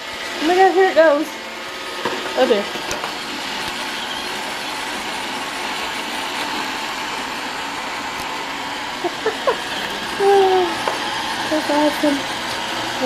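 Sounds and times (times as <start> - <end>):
robot vacuum running: 0.0 - 13.0.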